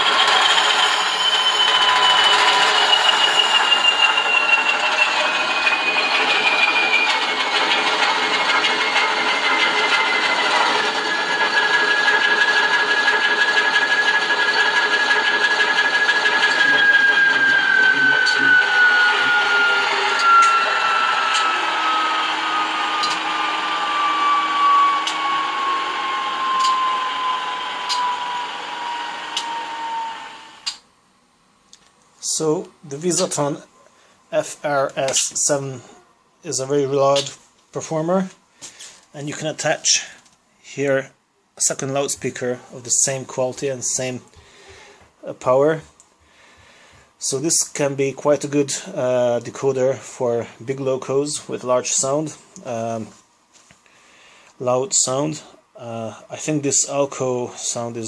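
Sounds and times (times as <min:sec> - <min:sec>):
high whine: 0:00.0 - 0:30.9, 0:34.4 - 0:46.0.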